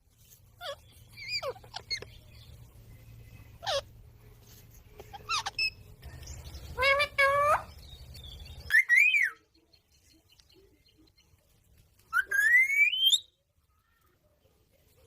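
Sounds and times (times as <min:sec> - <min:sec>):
parrot calling: 0:00.6 - 0:02.1, 0:03.6 - 0:03.9, 0:05.1 - 0:05.9, 0:06.8 - 0:07.8.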